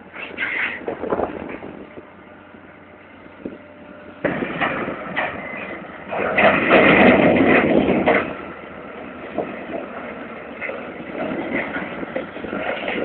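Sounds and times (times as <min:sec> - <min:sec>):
rumbling rush of stones: 0:04.2 - 0:13.0.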